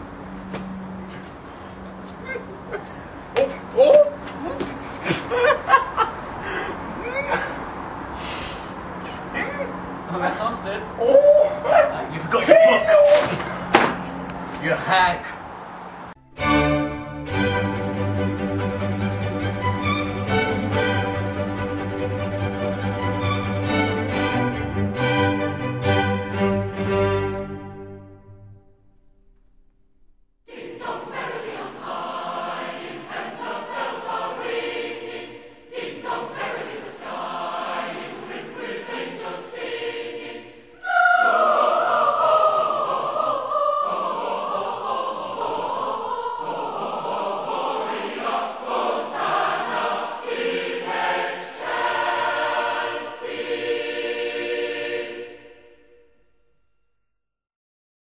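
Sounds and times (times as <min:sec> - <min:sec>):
choir singing: 0:16.4 - 0:28.5, 0:30.5 - 0:56.4.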